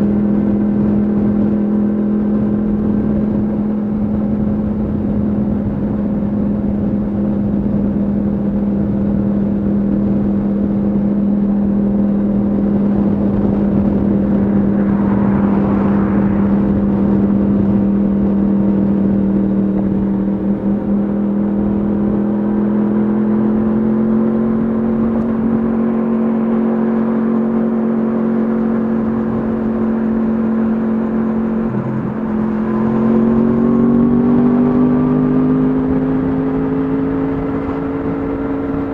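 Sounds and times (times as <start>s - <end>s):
motorcycle engine cruising: 0.0s - 38.9s.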